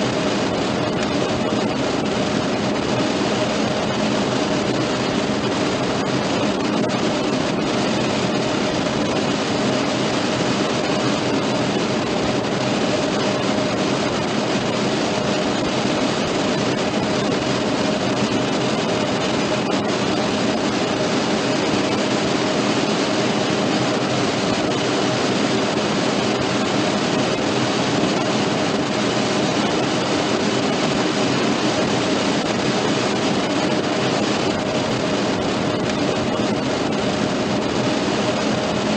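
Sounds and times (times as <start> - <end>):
constant low hum: 0.0 - 38.9.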